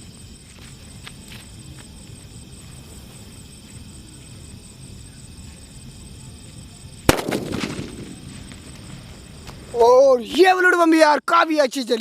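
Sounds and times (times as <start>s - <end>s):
faint high whine: 0.0s - 10.5s
quick cracks with echo: 7.1s - 8.4s
firecracker bang: 7.1s - 9.1s.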